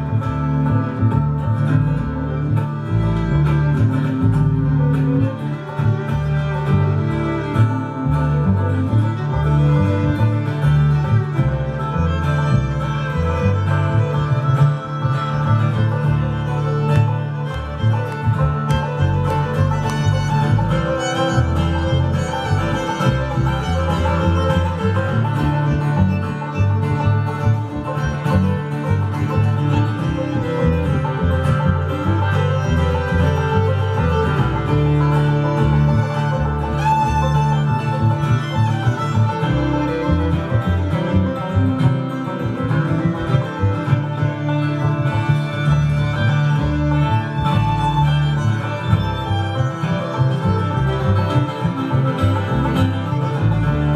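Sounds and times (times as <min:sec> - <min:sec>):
banjo: 0:00.0 - 0:53.9
fiddle lead: 0:00.0 - 0:53.9
guitar: 0:00.0 - 0:53.9
pulsing bass: 0:00.0 - 0:53.9.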